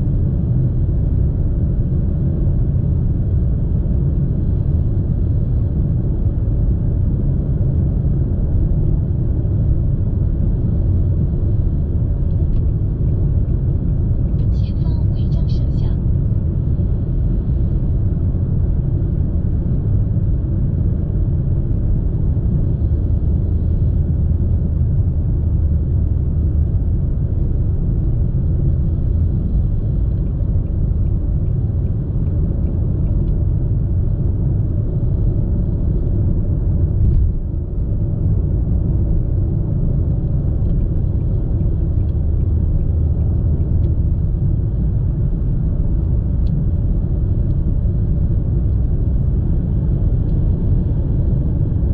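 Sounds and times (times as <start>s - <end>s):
car cabin road rumble: 0.0s - 51.9s.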